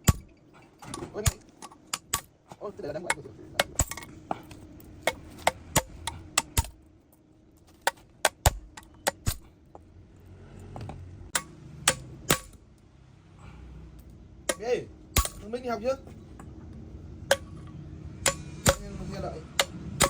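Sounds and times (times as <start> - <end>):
metal tools clinking: 3.1 - 6.2.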